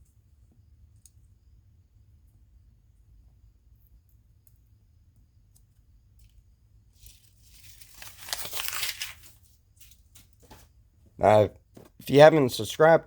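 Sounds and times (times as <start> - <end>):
knife slicing paper: 7.0 - 10.0.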